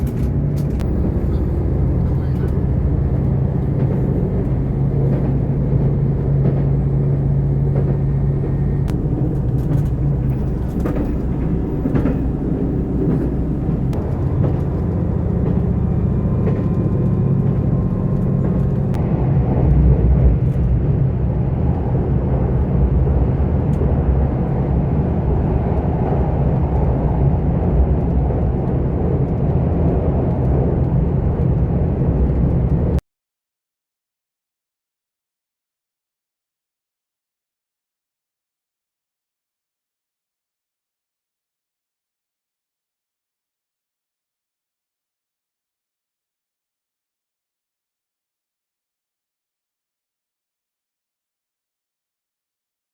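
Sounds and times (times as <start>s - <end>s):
moving train running: 0.0s - 33.0s.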